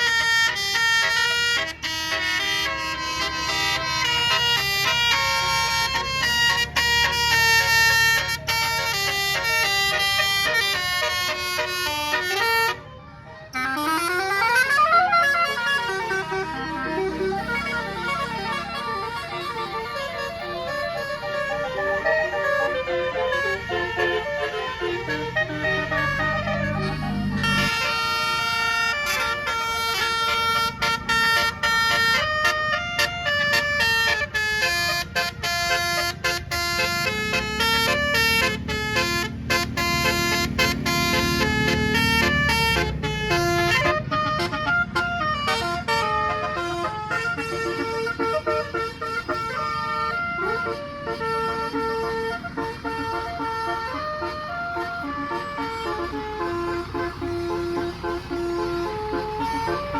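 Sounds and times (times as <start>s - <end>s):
bus horn playing melody: 0.0s - 59.9s.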